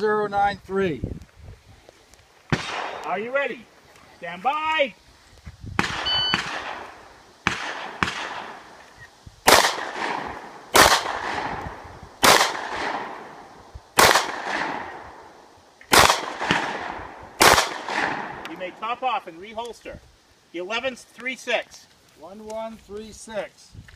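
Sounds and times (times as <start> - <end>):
pistol shots echoing: 2.5 - 3.2, 5.8 - 8.7, 9.5 - 15.3, 15.9 - 18.5
shot timer beep: 6.0 - 6.4.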